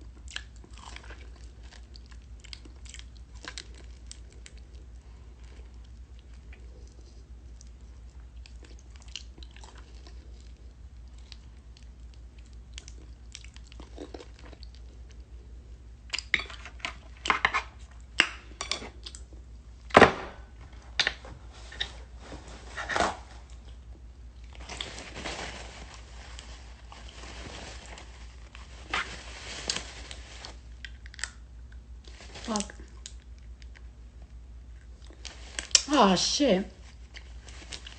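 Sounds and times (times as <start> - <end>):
wet chewing and sucking mouth sounds: 0.1 - 16.3.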